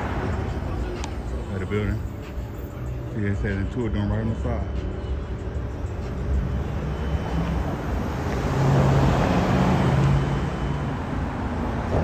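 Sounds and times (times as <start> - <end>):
vehicle passing: 0.0 - 2.4, 6.0 - 12.0.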